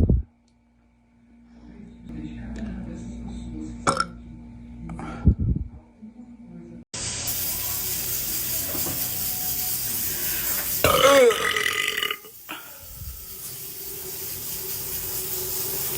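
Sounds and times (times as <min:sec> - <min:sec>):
woman belching: 0:03.9 - 0:04.1, 0:10.8 - 0:12.3.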